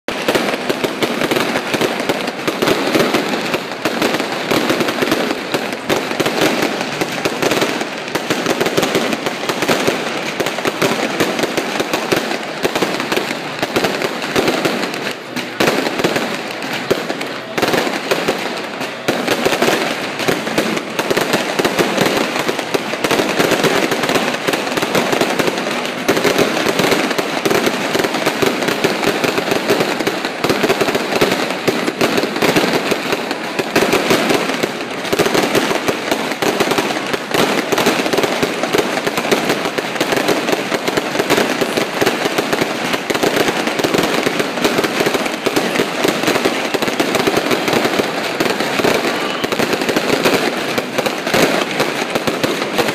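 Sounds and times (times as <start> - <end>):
firecrackers crackling: 0.1 - 52.9.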